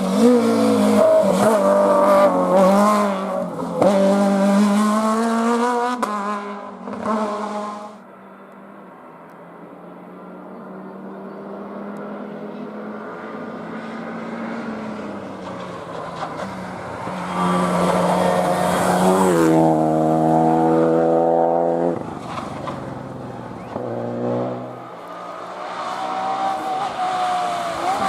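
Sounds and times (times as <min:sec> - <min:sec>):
rally car passing at speed: 0:00.0 - 0:08.0, 0:09.9 - 0:28.0.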